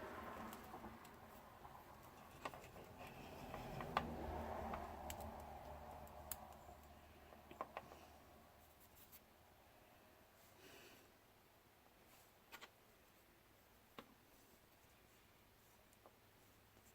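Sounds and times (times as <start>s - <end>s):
soft rustle: 7.0s - 10.9s, 11.8s - 16.9s.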